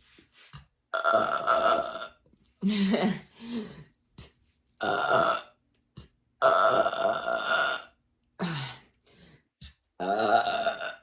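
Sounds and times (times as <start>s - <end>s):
woman belching loudly: 4.8s - 5.5s, 6.4s - 7.9s, 10.0s - 11.0s.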